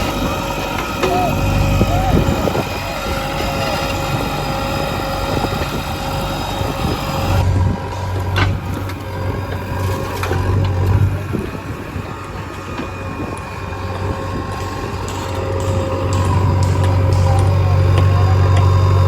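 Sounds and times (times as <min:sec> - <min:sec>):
backhoe diesel engine running: 0:00.0 - 0:19.0
deep low hum: 0:00.0 - 0:19.0.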